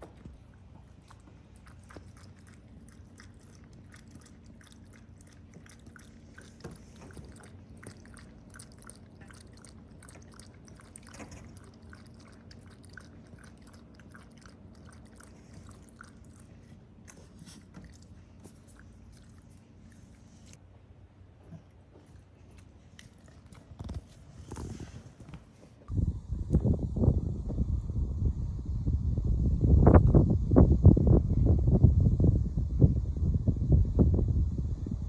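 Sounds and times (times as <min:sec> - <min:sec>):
dog chewing with clicks and crunches: 0:00.0 - 0:20.6, 0:21.4 - 0:25.6.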